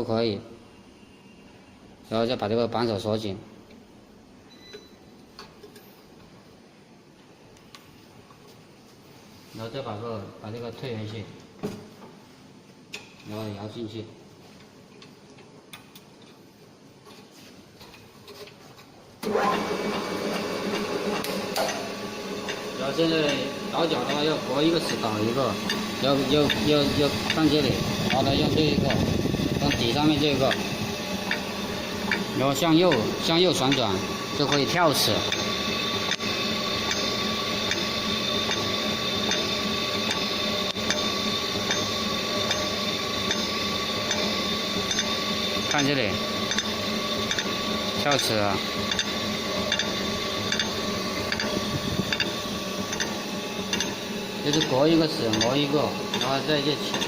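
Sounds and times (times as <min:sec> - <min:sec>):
electric motor humming: 0:19.3 - 0:57.0
grinder ticking: 0:20.6 - 0:57.0.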